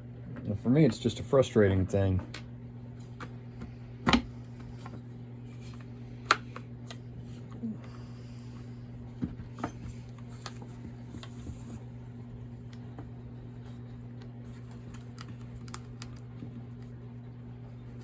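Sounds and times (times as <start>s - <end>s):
steady low hum: 0.0s - 18.0s.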